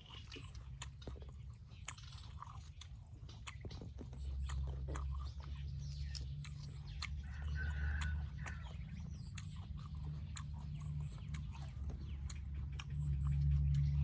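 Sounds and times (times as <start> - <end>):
chickens clucking: 0.0 - 14.0
low rumble: 8.2 - 14.0.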